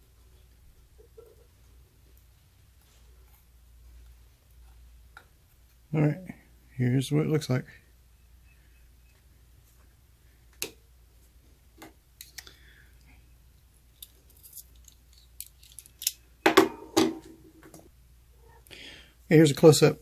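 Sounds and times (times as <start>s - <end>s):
metal parts and tools clicking: 13.9s - 16.2s.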